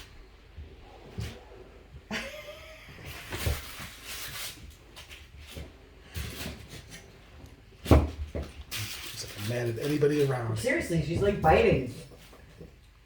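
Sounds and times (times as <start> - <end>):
rustling and knocking handling noise: 3.0 - 13.0.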